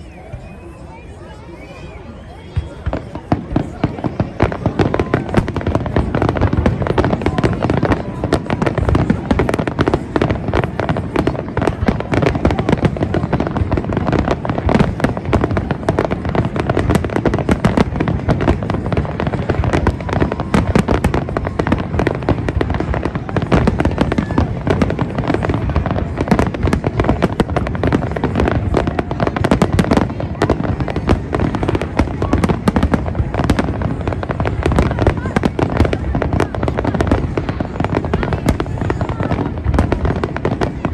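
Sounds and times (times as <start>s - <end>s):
fireworks banging and crackling: 0.0s - 40.9s.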